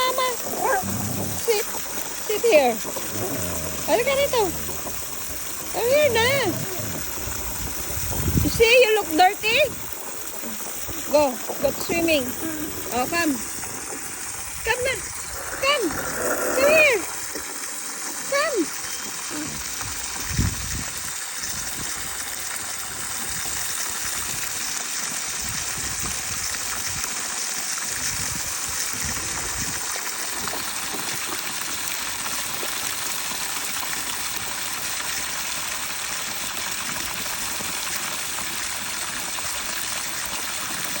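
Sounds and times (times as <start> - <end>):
running water rushing: 0.0 - 23.4.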